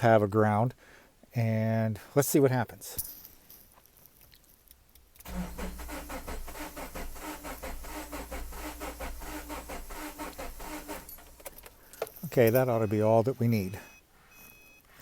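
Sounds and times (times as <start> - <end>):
engine cranking by starter: 5.2 - 11.8.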